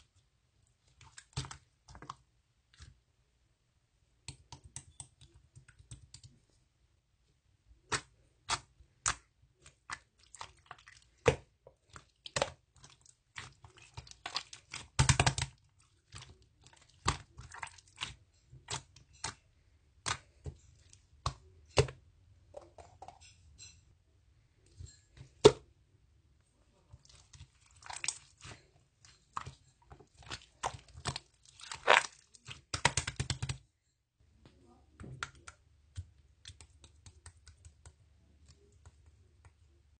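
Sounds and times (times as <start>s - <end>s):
slime squeezed by hand: 31.6s - 32.2s.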